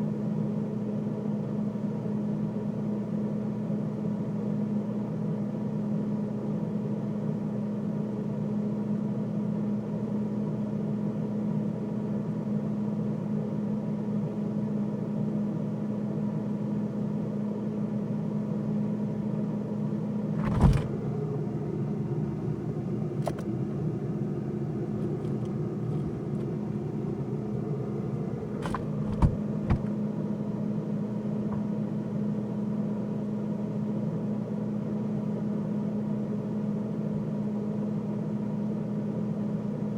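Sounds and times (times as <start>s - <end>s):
freezer humming: 19.8s - 32.0s.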